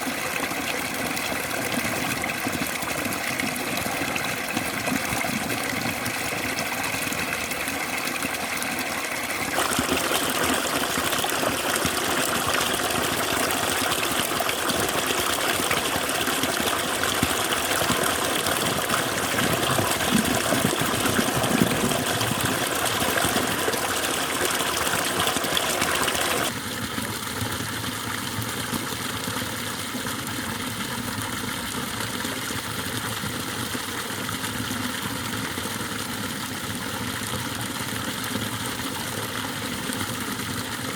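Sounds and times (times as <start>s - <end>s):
water splashing into pond: 0.0s - 40.9s.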